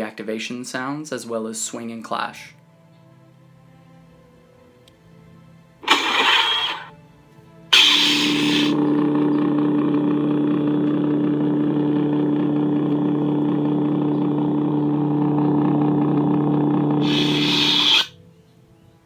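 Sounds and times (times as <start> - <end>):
lightsaber blade hum: 5.8 - 6.9, 7.7 - 9.4, 17.0 - 18.2
lightsaber ignition sound: 5.8 - 6.9, 7.7 - 8.9, 17.0 - 18.2
lightsaber retraction sound: 5.8 - 6.9, 7.7 - 8.8, 17.0 - 18.2.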